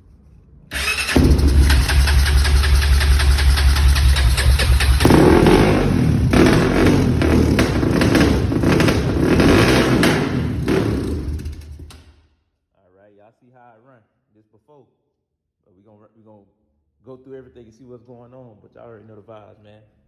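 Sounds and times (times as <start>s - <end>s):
quad engine idling and revving: 0.7s - 12.0s.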